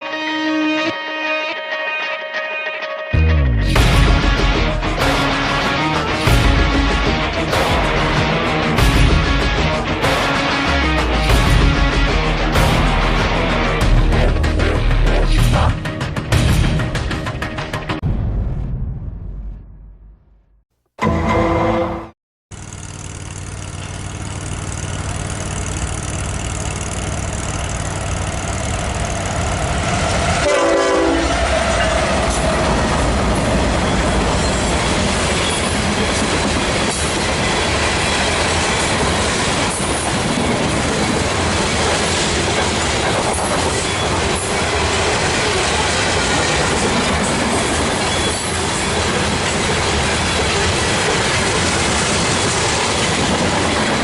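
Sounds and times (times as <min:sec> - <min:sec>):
train engine drone: 0:03.7 - 0:17.8, 0:21.0 - 0:54.0
wheels on rails: 0:22.5 - 0:30.5, 0:31.2 - 0:54.0
train horn blast: 0:30.0 - 0:32.8.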